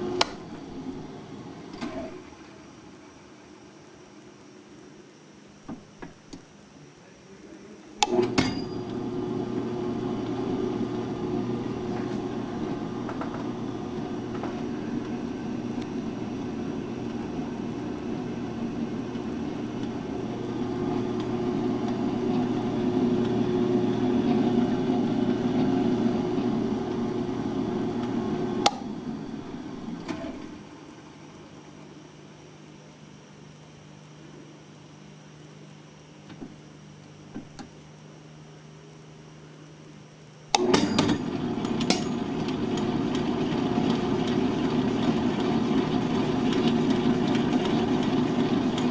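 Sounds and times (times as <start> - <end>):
mixer motor humming: 0.0 - 4.9, 8.0 - 34.5, 40.5 - 48.9
mixer switch click: 8.0 - 8.3, 28.0 - 28.9, 40.5 - 40.7.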